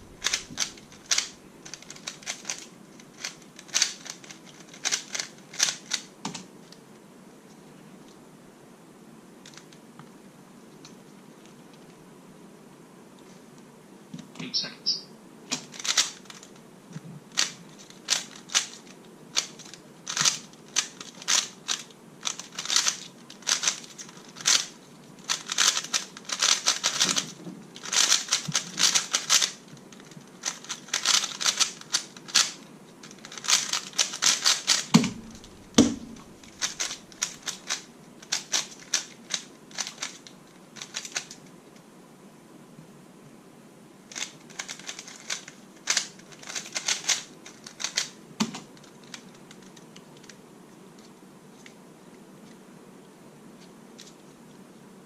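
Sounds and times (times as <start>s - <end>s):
plastic puzzle cube clicking: 0.2s - 6.4s, 15.5s - 16.5s, 17.4s - 24.7s, 25.3s - 41.4s, 44.1s - 50.4s
low thump: 35.0s - 36.4s.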